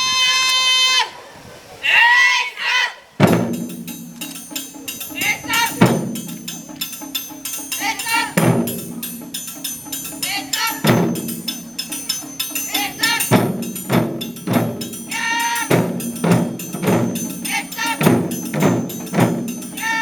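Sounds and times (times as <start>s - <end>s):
voices calling out: 0.0s - 20.0s
heavy booming drum hits: 3.2s - 4.2s, 13.3s - 15.1s, 15.7s - 19.6s
taiko drum ensemble playing: 3.2s - 20.0s.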